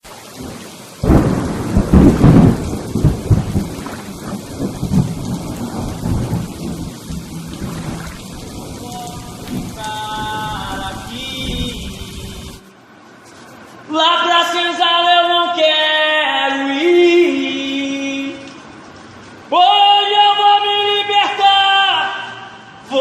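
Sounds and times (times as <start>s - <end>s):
steady rain: 0.0s - 23.0s
rolling thunderclap: 0.4s - 12.6s.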